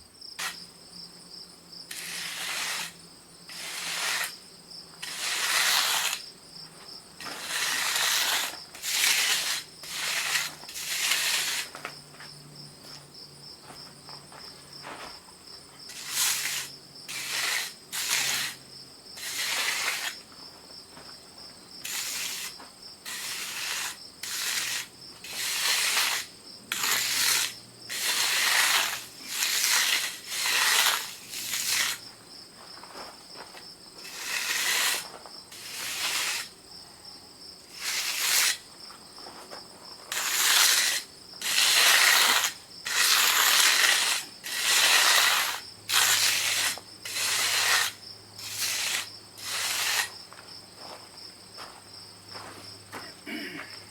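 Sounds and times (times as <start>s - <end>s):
insects chirping: 0.0s - 53.9s
hand tool scraping fresh concrete: 0.4s - 0.6s, 1.9s - 4.4s, 5.0s - 12.3s, 15.8s - 20.4s, 21.8s - 36.6s, 37.6s - 50.9s.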